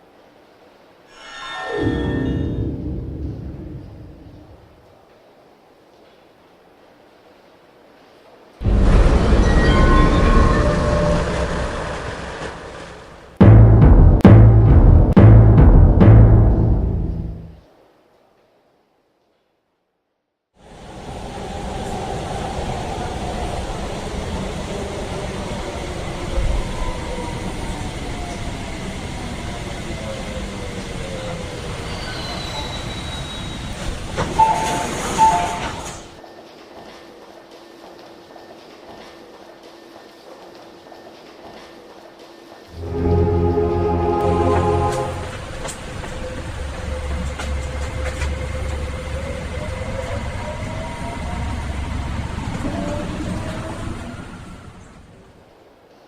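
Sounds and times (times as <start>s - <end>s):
low thud: 13.4s - 17.5s
subway train motor whine: 20.6s - 36.2s, 42.3s - 55.6s.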